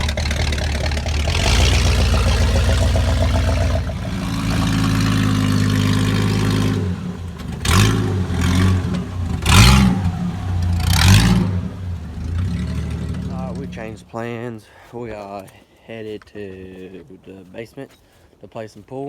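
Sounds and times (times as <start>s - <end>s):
truck engine revving: 0.0s - 14.1s.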